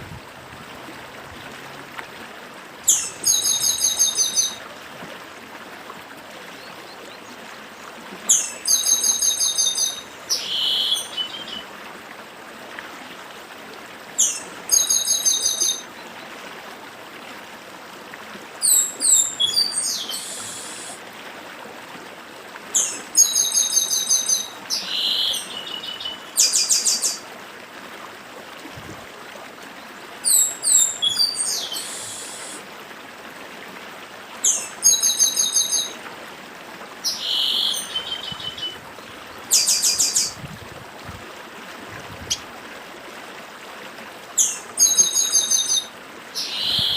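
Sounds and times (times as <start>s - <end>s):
stream rushing: 0.0s - 46.9s
blackbird singing: 30.3s - 32.6s.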